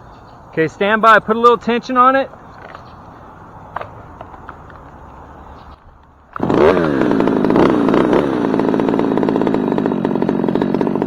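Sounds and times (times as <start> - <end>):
chainsaw starting and revving: 6.3 - 11.0.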